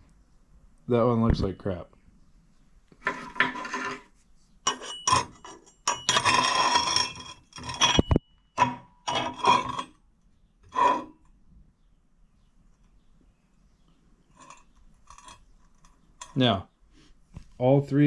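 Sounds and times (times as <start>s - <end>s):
metal plate scraping and clinking: 3.0s - 10.0s, 10.6s - 11.3s, 14.3s - 16.4s.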